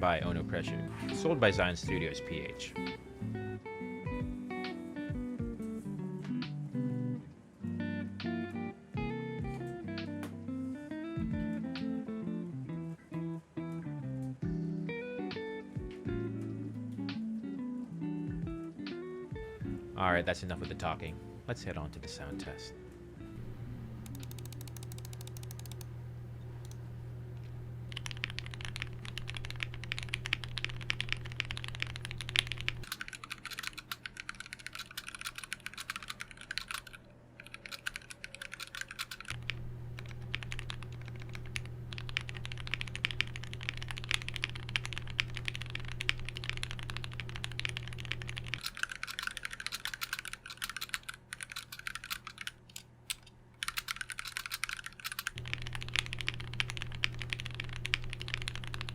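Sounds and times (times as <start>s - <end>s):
mechanical keyboard typing: 24.0s - 25.9s, 27.9s - 58.9s.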